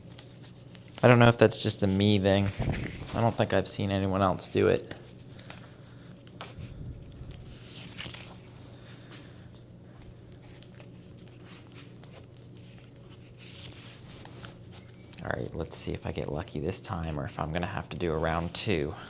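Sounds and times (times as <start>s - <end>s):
steady low hum: 0.0s - 19.0s
tape rustling and creaking: 6.2s - 8.5s, 9.9s - 15.3s.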